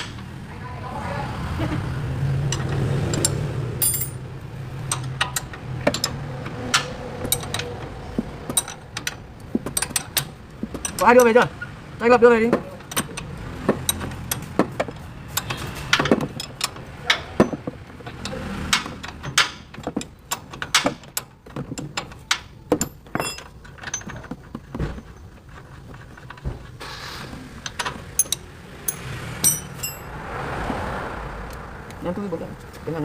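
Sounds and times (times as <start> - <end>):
metal tools clinking: 2.5 - 4.2, 8.5 - 9.2, 21.8 - 26.4, 27.7 - 30.1.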